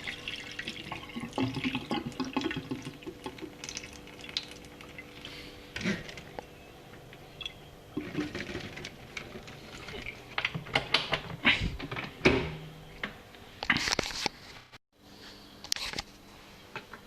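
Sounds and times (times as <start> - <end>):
washing machine knocking and rattling: 8.0 - 12.8.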